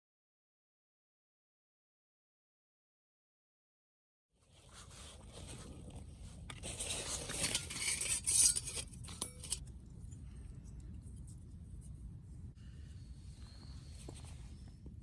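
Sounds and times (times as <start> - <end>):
low outdoor rumble: 4.7 - 15.0
camp cookware clinking: 6.5 - 9.6.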